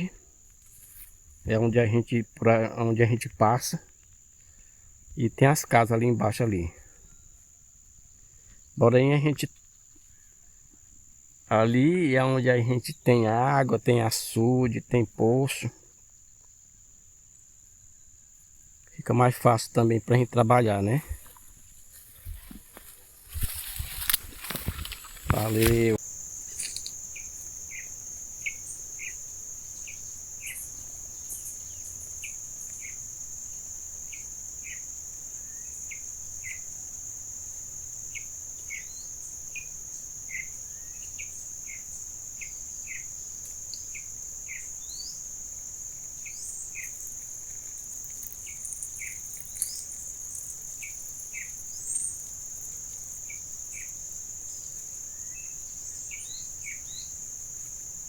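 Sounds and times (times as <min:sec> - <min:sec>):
insects droning: 0:00.0 - 0:58.0
birds calling: 0:43.7 - 0:54.0.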